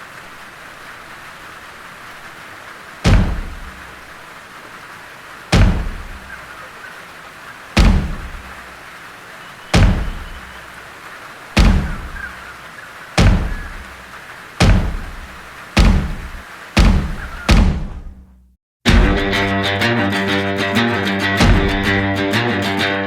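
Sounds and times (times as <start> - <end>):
heavy deep thuds: 3.1 - 4.1, 5.5 - 6.5, 7.8 - 8.7, 9.8 - 10.6, 11.6 - 12.5, 13.2 - 19.4, 21.4 - 22.1.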